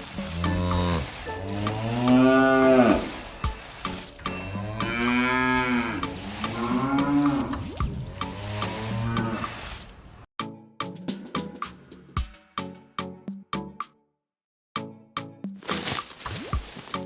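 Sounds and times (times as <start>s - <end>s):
cow-like moos: 0.1s - 10.0s
background music with beat: 10.4s - 13.9s.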